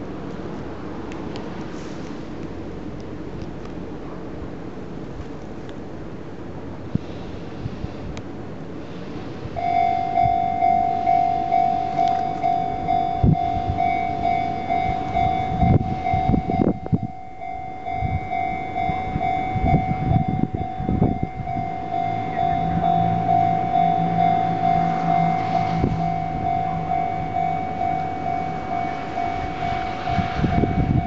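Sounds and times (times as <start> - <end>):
level crossing warning bell: 9.6 - 31.0.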